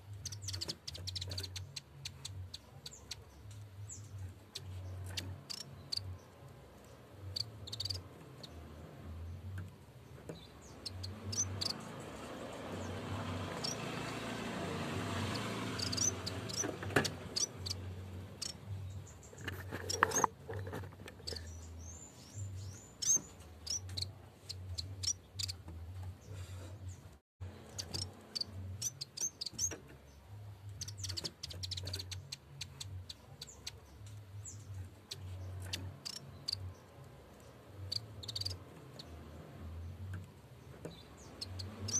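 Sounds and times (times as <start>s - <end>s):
bird chirping and trilling: 0.2s - 6.4s, 7.2s - 8.7s, 10.3s - 12.0s, 12.8s - 14.3s, 15.0s - 20.3s, 21.2s - 25.7s, 27.5s - 36.9s, 37.6s - 39.2s, 40.9s - 41.9s.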